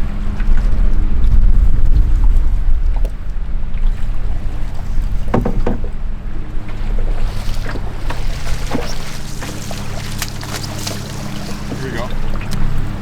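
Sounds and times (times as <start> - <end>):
river water moving around boat: 0.0 - 13.0
wind on microphone: 0.0 - 13.0
short splashes or knocks: 3.8 - 13.0.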